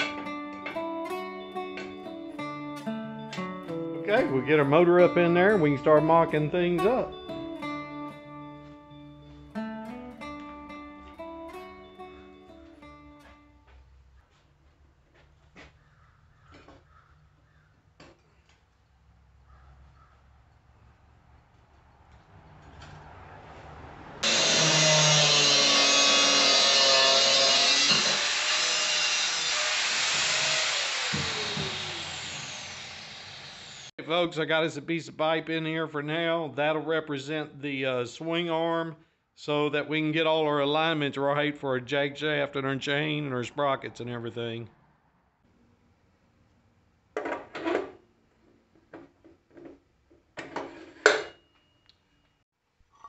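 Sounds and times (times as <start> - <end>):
acoustic guitar music: 0.0 - 13.7
power tool winding down: 24.2 - 33.9.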